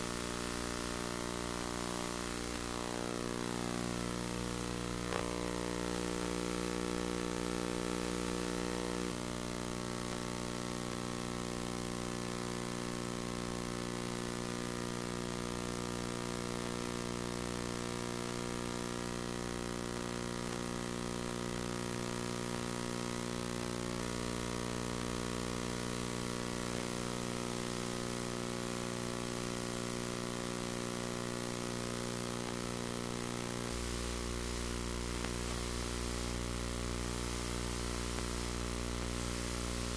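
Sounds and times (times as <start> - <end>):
tape hiss: 0.0 - 11.4, 30.8 - 39.9
electrical hum: 0.0 - 12.7, 30.7 - 39.9.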